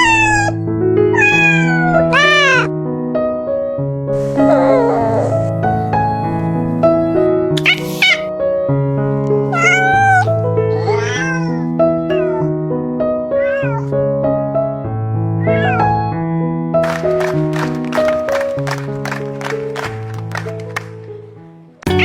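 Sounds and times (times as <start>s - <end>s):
cat meowing: 0.0s - 2.7s, 4.2s - 5.5s, 7.6s - 8.3s, 9.5s - 14.0s, 15.3s - 16.1s.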